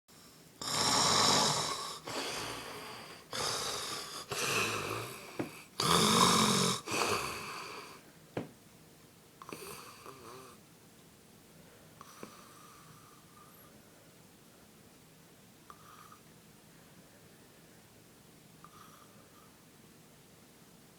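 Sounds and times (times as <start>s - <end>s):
person snoring loudly: 0.6s - 8.0s
quiet breathing: 1.2s - 8.2s, 9.4s - 10.6s, 11.5s - 14.8s, 15.6s - 19.8s.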